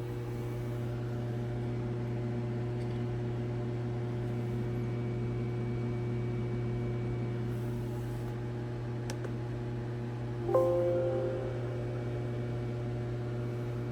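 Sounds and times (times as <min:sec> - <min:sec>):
low mechanical hum: 0:00.0 - 0:12.9
faint steady tones: 0:10.5 - 0:12.4.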